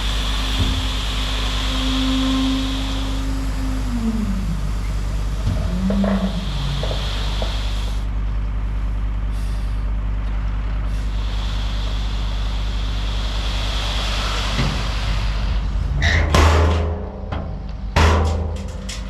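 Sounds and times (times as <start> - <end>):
high machine whine: 0.0 - 9.0, 10.8 - 16.3
excavator diesel engine running: 0.0 - 19.0.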